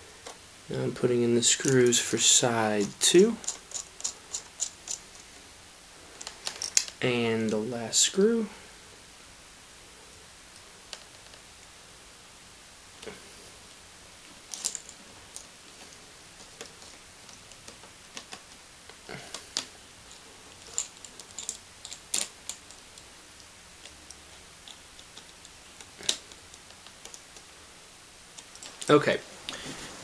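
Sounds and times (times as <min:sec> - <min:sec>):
plastic parts being handled: 0:01.4 - 0:05.4, 0:06.1 - 0:07.6, 0:14.3 - 0:27.5, 0:28.3 - 0:29.0.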